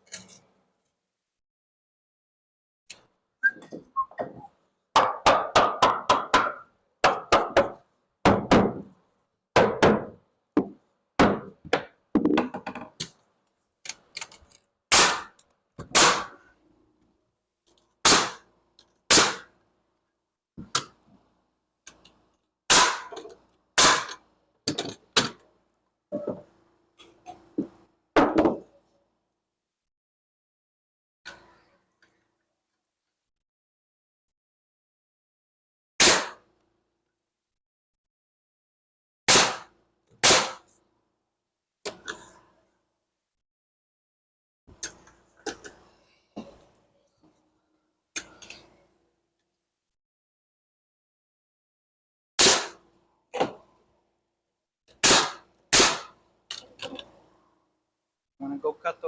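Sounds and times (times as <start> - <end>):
hammer nailing into wood: 5.0 - 8.9, 9.6 - 12.6, 14.9 - 16.4, 18.1 - 18.4, 19.1 - 19.5, 22.7 - 23.2, 23.8 - 24.2.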